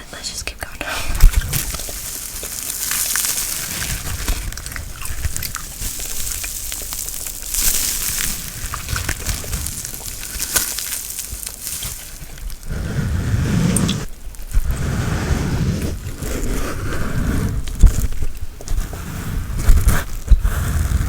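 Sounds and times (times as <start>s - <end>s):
brushing on microphone: 0.8s - 17.6s.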